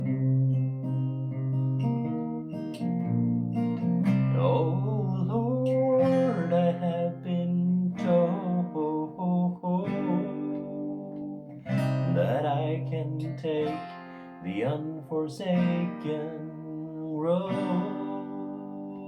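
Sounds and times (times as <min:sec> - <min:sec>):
acoustic guitar: 0:00.0 - 0:19.0
person singing: 0:04.2 - 0:19.0.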